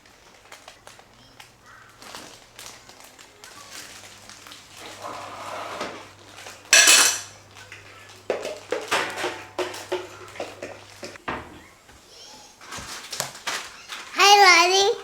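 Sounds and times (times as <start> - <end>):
dishes and cutlery clattering: 4.8 - 11.5
loud ringing clang: 6.8 - 7.3
sharp clinks and knocks: 6.8 - 7.4.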